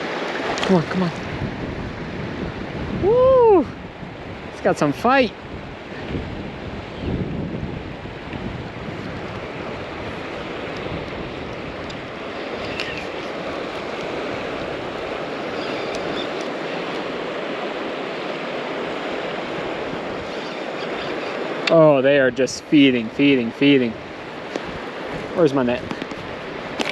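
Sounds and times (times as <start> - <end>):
river current rushing: 0.0 - 26.9
wind buffeting microphone: 0.0 - 26.9.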